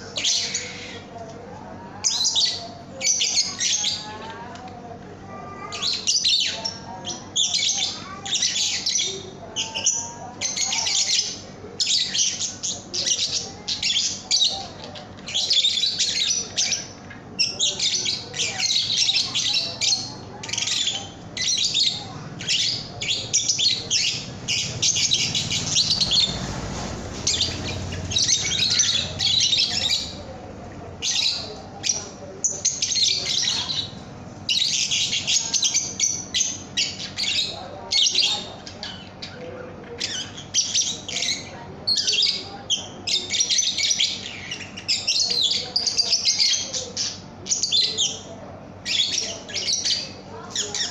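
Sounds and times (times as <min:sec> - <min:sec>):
lovebirds chirping and squawking: 0:00.0 - 0:04.7, 0:05.4 - 0:50.9.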